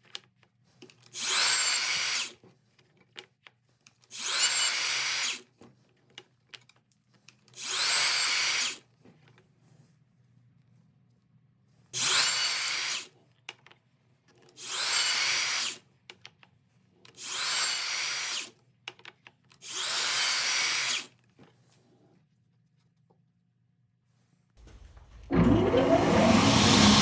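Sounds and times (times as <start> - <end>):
electric drill whining: 1.2 - 2.3, 4.1 - 5.4, 14.6 - 15.8, 17.2 - 18.5, 19.6 - 21.1, 25.3 - 27.0.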